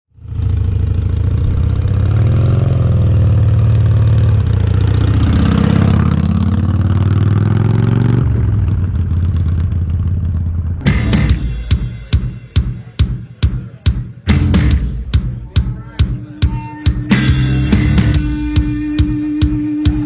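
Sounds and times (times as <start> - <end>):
motorcycle engine revving: 0.1 - 12.0, 14.3 - 15.2, 17.0 - 20.0.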